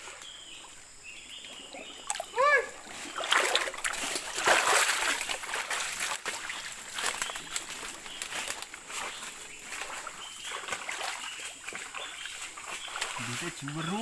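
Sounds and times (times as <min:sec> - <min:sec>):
people wading through water: 0:01.3 - 0:14.0
person shouting: 0:02.3 - 0:02.8.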